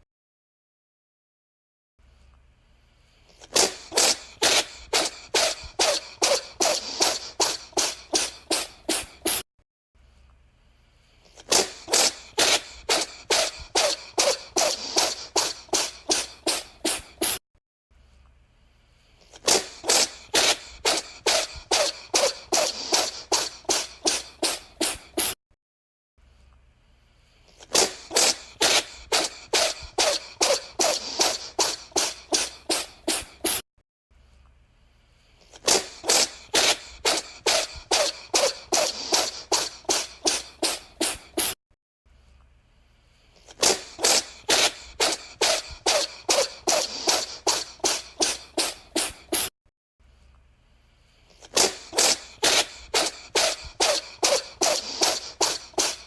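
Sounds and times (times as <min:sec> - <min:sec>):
cat sneezing: 0:03.3 - 0:09.4, 0:11.3 - 0:17.4, 0:19.2 - 0:25.4, 0:27.5 - 0:33.6, 0:35.4 - 0:41.6, 0:43.4 - 0:49.5, 0:51.3 - 0:56.0.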